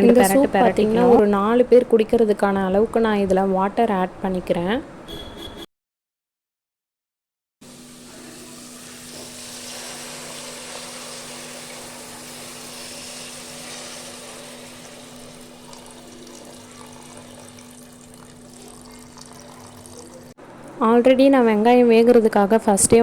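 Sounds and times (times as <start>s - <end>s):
water pouring into a pan: 8.3s - 20.4s.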